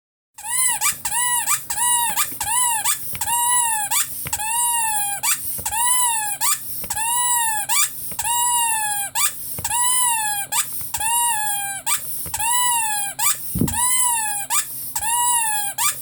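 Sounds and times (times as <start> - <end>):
squeaky rubber dog toy: 0.4 - 16.0.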